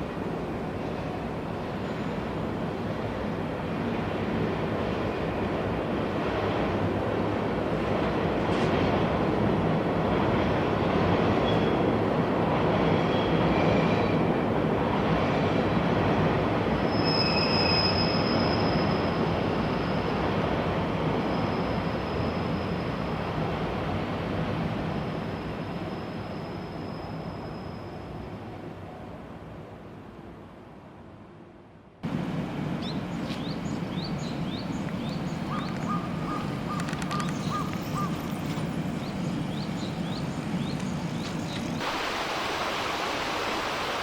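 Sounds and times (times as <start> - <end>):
train rumbling on rails: 0.0 - 31.4, 32.0 - 42.0
high wheel squeal: 16.9 - 20.1.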